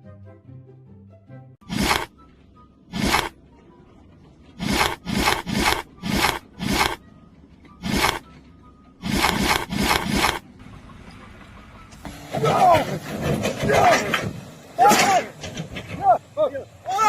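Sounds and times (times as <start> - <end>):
hand tool scraping hard surface: 4.6 - 7.0.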